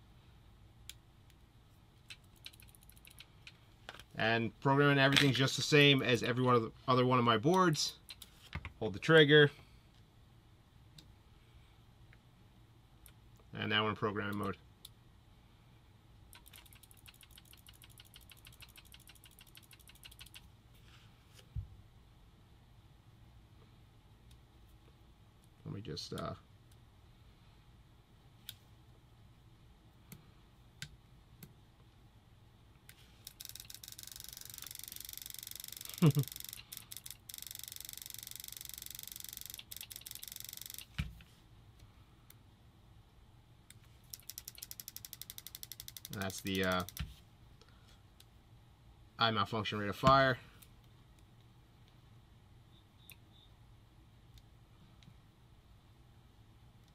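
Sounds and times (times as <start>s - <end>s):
paintball marker rapid clicks: 16.4s - 20.4s.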